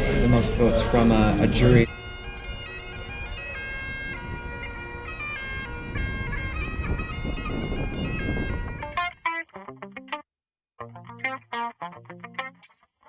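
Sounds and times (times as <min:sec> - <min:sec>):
bagpipe melody with drone: 0:00.0 - 0:09.0
wind rumble on microphone: 0:03.1 - 0:09.0
plucked notes with echo: 0:10.8 - 0:12.7.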